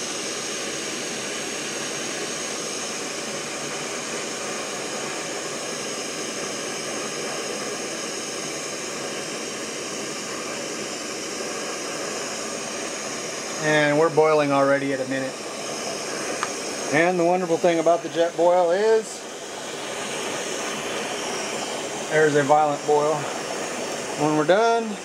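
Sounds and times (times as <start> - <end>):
gas stove burner hissing: 0.0 - 25.0.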